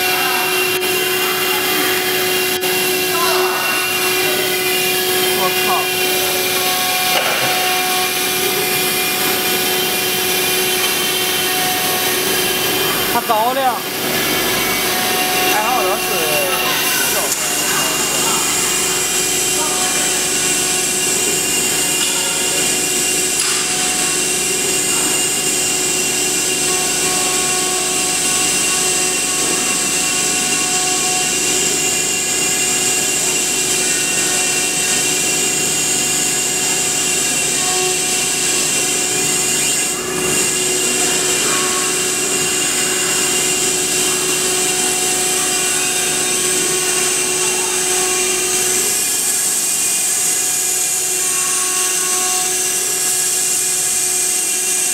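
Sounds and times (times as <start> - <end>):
cutting noise: 0.0 - 54.9
router spindle whine: 0.0 - 54.9.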